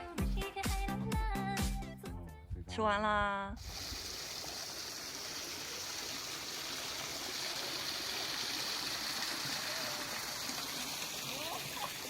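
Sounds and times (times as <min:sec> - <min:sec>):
water rushing: 0:03.6 - 0:12.0.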